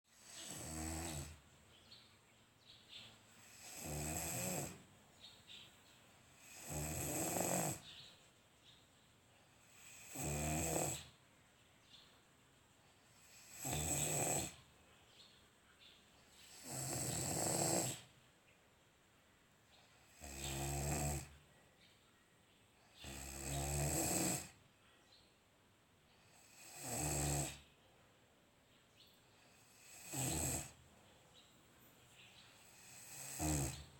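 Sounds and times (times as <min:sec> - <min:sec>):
child snoring: 0:00.1 - 0:01.4, 0:03.4 - 0:04.8, 0:06.4 - 0:07.9, 0:09.6 - 0:11.2, 0:13.2 - 0:14.6, 0:16.5 - 0:18.1, 0:20.0 - 0:21.3, 0:23.0 - 0:24.6, 0:26.3 - 0:27.6, 0:29.5 - 0:30.8, 0:32.6 - 0:33.9.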